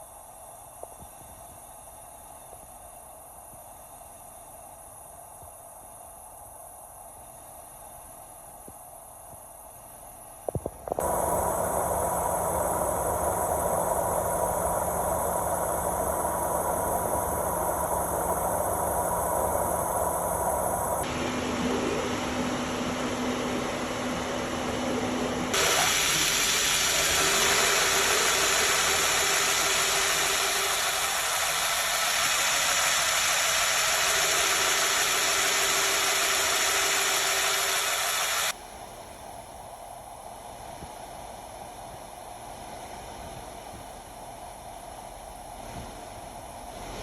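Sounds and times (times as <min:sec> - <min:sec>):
air conditioning hiss: 0:00.0 - 0:47.0
loud bright hiss: 0:11.0 - 0:21.5, 0:25.5 - 0:38.6.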